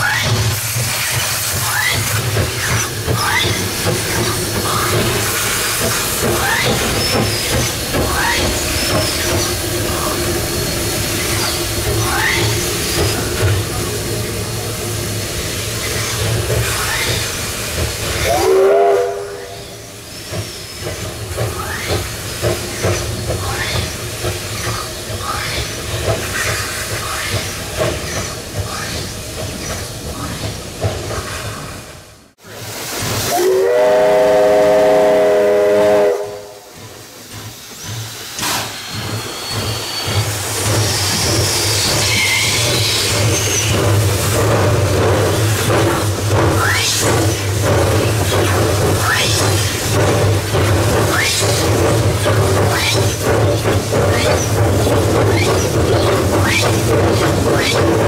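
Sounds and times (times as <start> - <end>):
hissing steam: 0.0 - 58.0
steam whistle blast: 18.2 - 19.8, 33.3 - 36.8.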